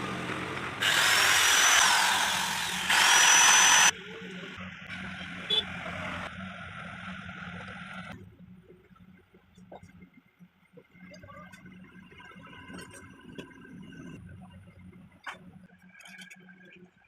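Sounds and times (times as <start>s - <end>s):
mixer grinder motor whine: 0.0s - 4.0s.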